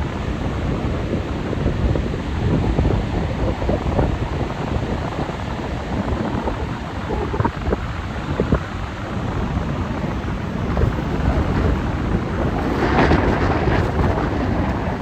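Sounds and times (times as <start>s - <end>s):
wind rumbling on microphone: 0.0s - 15.0s
surf churning and breaking: 9.6s - 15.0s
large wave crashing: 10.0s - 15.0s.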